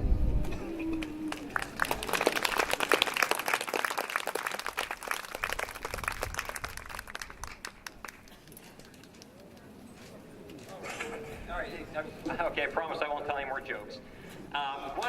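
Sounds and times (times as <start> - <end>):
audience applauding: 1.0 - 9.3.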